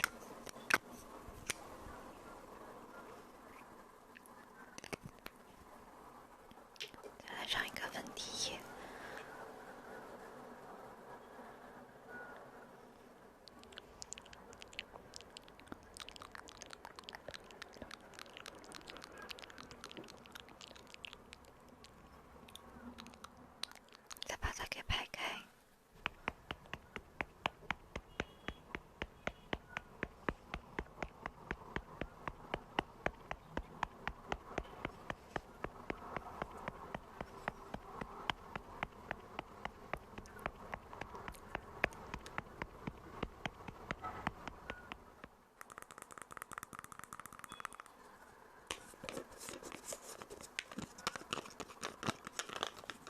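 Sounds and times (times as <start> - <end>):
faint continuous hum: 0.0 - 53.0
wet mouth clicks and smacks: 13.4 - 24.9, 26.0 - 47.9.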